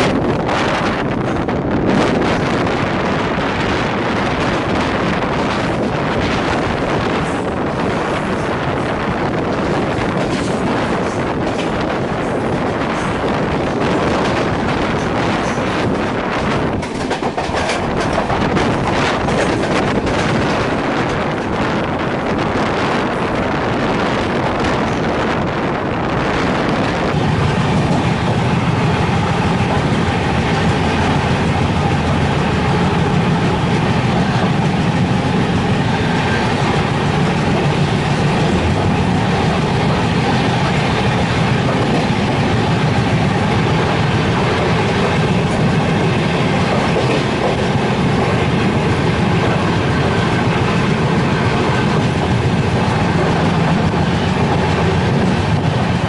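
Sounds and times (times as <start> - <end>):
train wheels rumbling on rails: 0.0 - 56.0.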